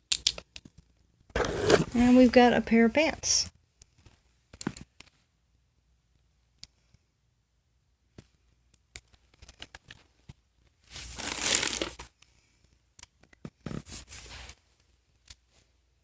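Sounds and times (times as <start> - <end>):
plastic bag ripping open: 10.9 - 12.0
plastic bag crinkling: 11.0 - 12.1.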